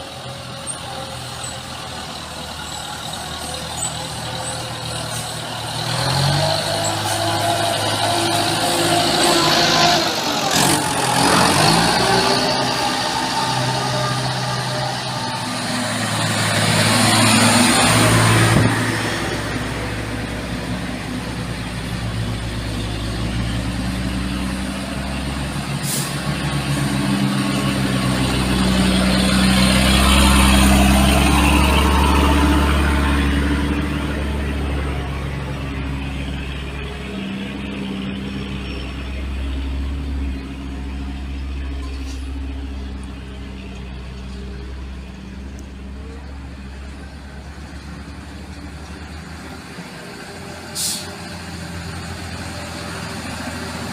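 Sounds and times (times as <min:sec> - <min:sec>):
heavy machinery engine rumble: 0:00.0 - 0:53.9
hiss: 0:50.6 - 0:51.3.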